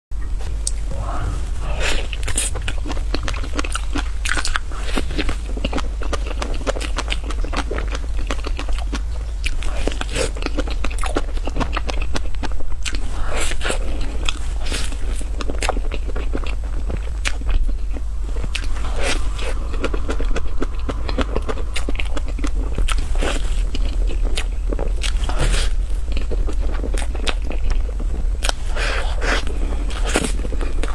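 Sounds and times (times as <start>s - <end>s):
steady low hum: 0.2s - 11.6s, 13.2s - 30.9s.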